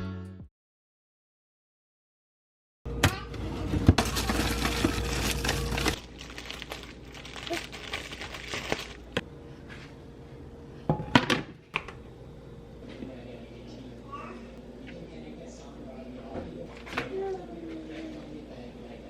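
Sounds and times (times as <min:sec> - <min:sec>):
packaging crinkling: 0:04.0 - 0:09.2.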